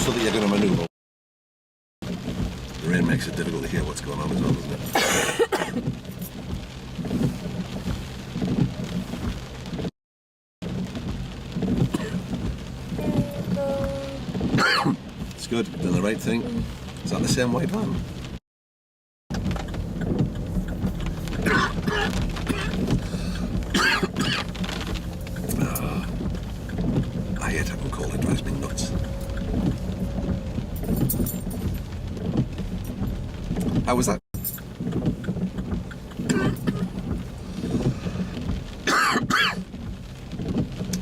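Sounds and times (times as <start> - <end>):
person coughing: 4.9 - 5.8, 21.4 - 22.8, 23.8 - 24.4, 36.3 - 36.9
low engine hum: 10.6 - 17.1, 19.3 - 38.9
car cabin rumble: 10.6 - 18.4, 19.3 - 41.0.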